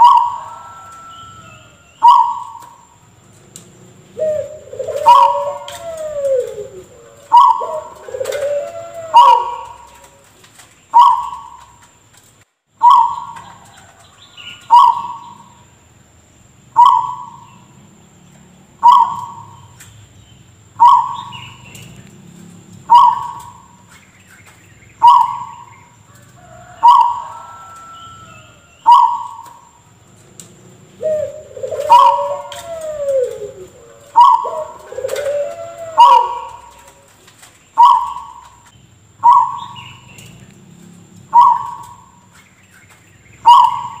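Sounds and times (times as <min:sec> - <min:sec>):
dove gliding coo: 0:00.0 - 0:12.0, 0:12.8 - 0:15.7, 0:16.8 - 0:17.8, 0:18.7 - 0:19.9, 0:20.6 - 0:44.0
dove cough-like calls: 0:02.0 - 0:02.8, 0:04.1 - 0:10.1, 0:20.8 - 0:21.9, 0:22.8 - 0:23.8, 0:25.0 - 0:25.7, 0:28.9 - 0:29.6, 0:31.0 - 0:40.2, 0:41.3 - 0:42.1, 0:43.4 - 0:44.0.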